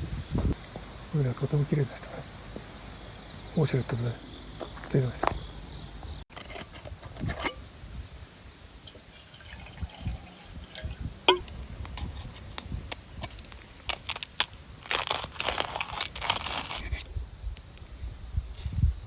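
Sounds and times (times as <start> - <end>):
liquid dripping and pouring: 9.0 - 11.5.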